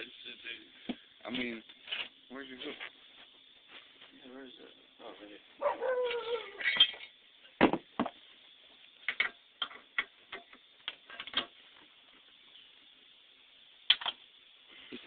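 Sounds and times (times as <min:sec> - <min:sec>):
objects clicking and knocking: 0:09.0 - 0:11.6.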